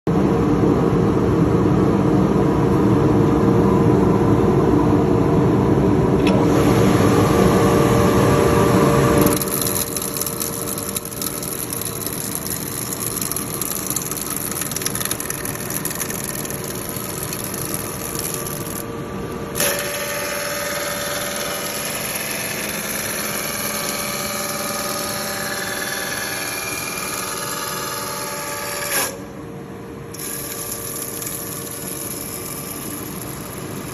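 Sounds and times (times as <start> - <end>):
woodworking machinery running: 6.2 - 29.4, 30.1 - 33.9.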